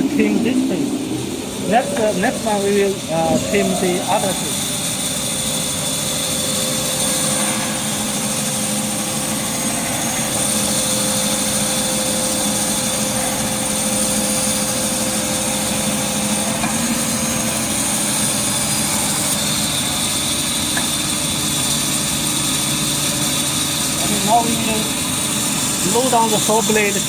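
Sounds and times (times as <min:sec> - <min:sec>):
band saw with high whine: 0:00.0 - 0:05.8.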